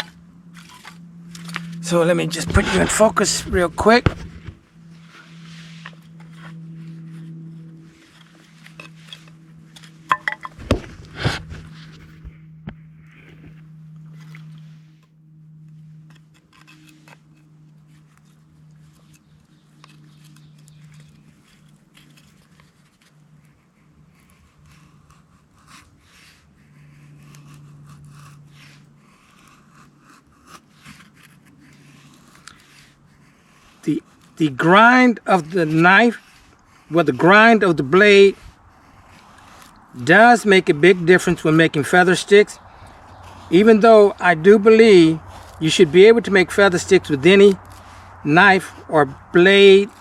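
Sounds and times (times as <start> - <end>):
knife scraping wood: 0.0 - 50.0.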